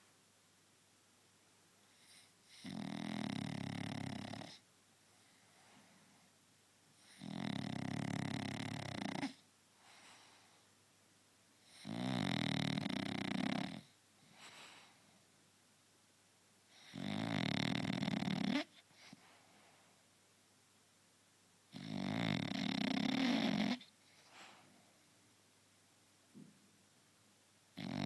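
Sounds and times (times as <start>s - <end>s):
dog snoring: 1.9s - 4.6s, 7.0s - 9.4s, 11.6s - 14.9s, 16.7s - 19.2s, 21.7s - 24.2s, 27.8s - 28.0s
faint dog breaths: 3.5s - 8.1s, 8.8s - 10.8s, 12.9s - 15.4s, 16.6s - 20.1s, 21.7s - 25.3s.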